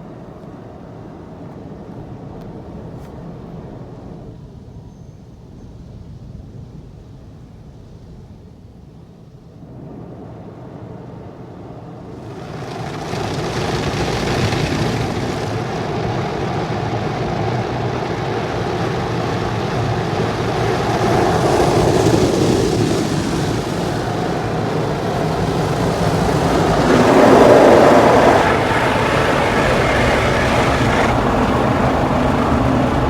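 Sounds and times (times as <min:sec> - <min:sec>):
car wash spray and machinery: 0:12.0 - 0:33.0.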